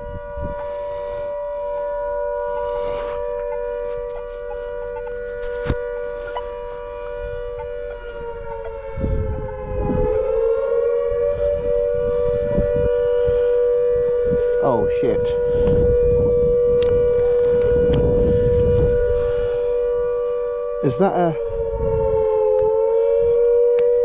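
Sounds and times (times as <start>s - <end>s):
air raid siren: 0.0s - 24.0s.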